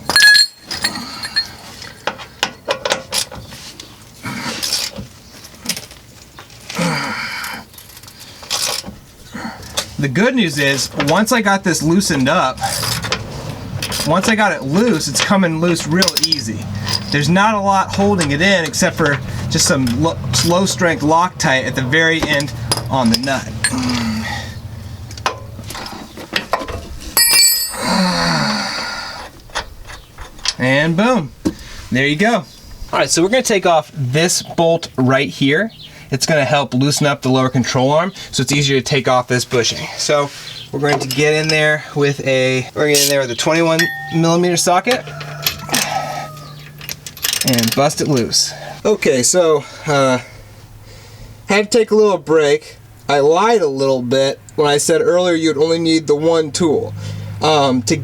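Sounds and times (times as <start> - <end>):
steel hand tools clinking: 0.0 - 1.7, 13.8 - 20.8, 21.7 - 24.5, 27.2 - 28.3, 42.9 - 47.9
sharp ringing metal clink: 0.1 - 1.6, 27.2 - 28.2, 43.8 - 47.5.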